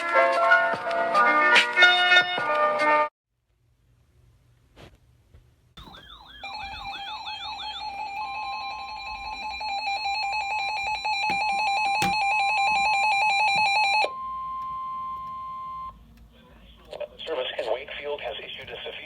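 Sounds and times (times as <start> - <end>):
warbling electronic alarm beeps: 5.8 - 15.9
steady warning alarm tone: 5.8 - 16.0.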